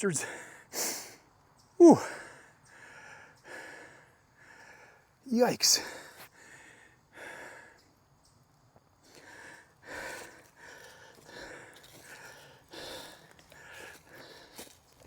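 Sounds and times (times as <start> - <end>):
man breathing hard and gasping: 1.8 - 5.0, 5.7 - 7.8, 9.0 - 14.8.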